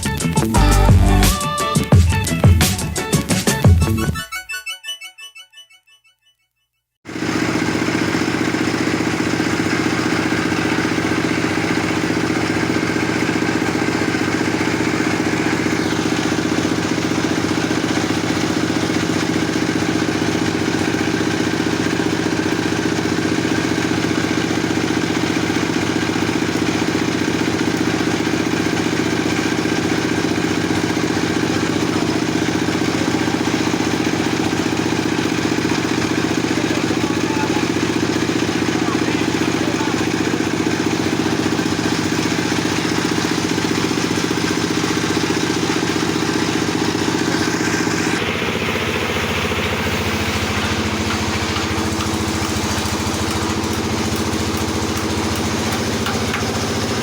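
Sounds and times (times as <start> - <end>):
chainsaw running steadily: 0.6 - 1.4, 7.0 - 57.0.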